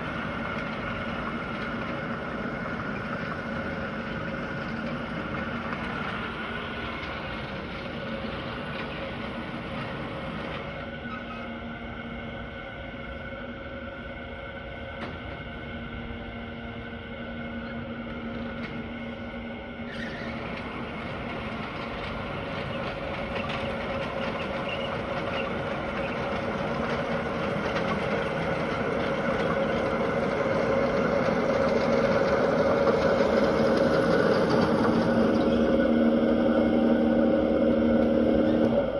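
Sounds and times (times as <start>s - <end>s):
lawn mower engine running: 20.0s - 38.9s.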